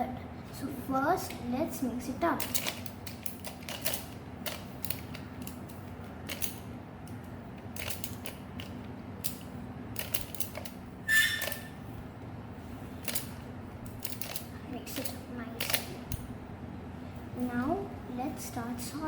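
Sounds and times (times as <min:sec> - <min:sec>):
plastic squeak: 0:11.0 - 0:11.8.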